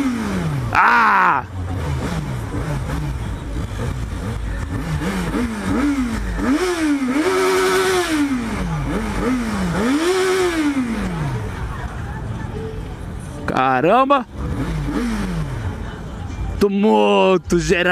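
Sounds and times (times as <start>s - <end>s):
motorcycle engine revving: 0.0s - 11.8s, 14.2s - 16.0s.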